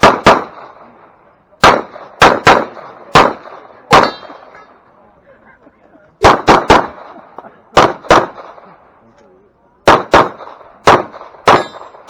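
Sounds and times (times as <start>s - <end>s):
pistol shots: 0.0s - 4.8s, 6.2s - 8.8s, 9.8s - 12.0s.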